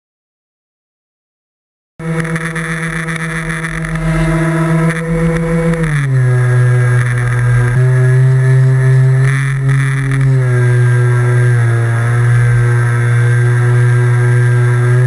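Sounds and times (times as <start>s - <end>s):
model plane motor hum: 2.0s - 15.0s.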